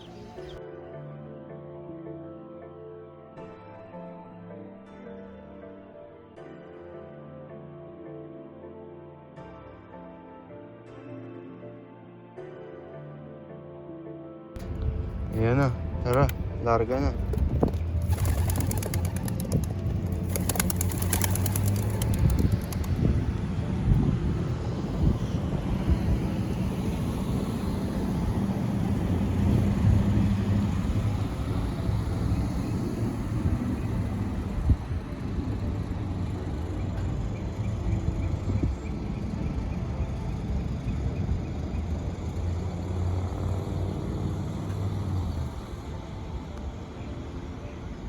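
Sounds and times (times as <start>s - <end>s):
road noise: 0.0s - 0.6s, 14.6s - 48.0s
car engine hum: 17.2s - 38.2s.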